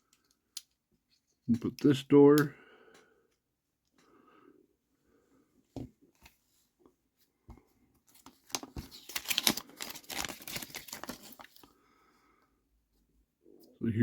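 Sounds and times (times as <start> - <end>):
packaging crinkling: 8.1 - 11.7.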